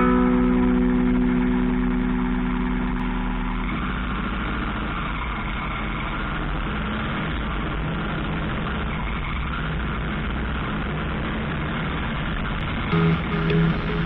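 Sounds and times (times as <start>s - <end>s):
road noise: 0.0s - 14.0s
vehicle engine running: 0.0s - 14.0s
background music: 12.9s - 14.0s.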